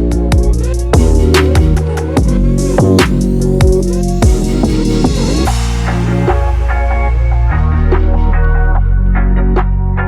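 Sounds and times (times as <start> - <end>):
electronic dance music: 0.0 - 9.0.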